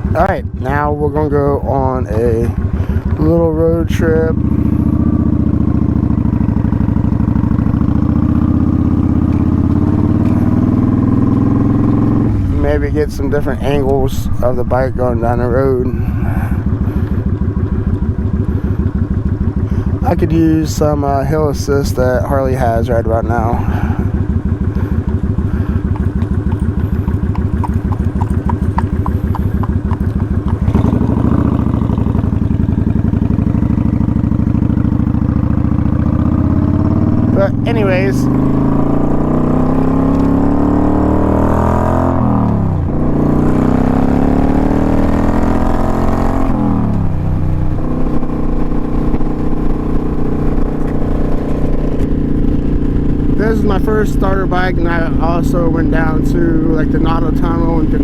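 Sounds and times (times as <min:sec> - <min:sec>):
motorcycle engine running: 0:00.0 - 0:58.0
light ticking: 0:24.2 - 0:32.5.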